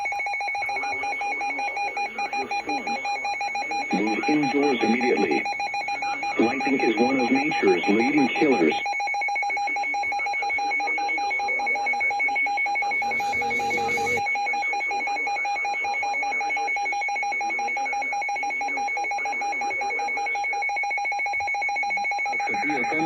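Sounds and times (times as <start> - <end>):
two-tone alert tone: 12.9 - 14.2.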